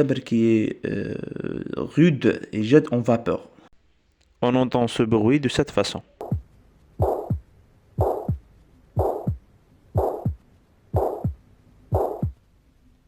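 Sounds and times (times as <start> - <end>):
harsh heart murmur: 6.2 - 10.4, 11.0 - 12.4
heartbeat thuds: 6.2 - 12.4.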